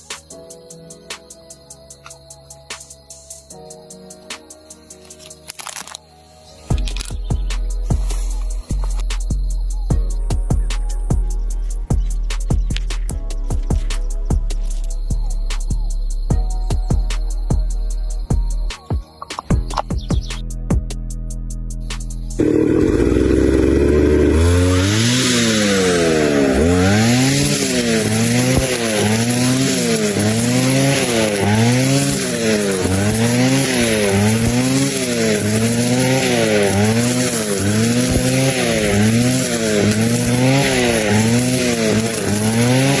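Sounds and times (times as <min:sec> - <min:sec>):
engine revving: 0:22.4 - 0:43.0.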